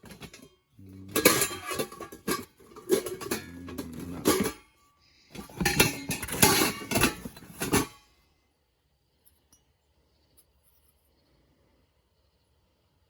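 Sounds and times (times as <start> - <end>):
hard items clinking together: 0.0 - 8.0.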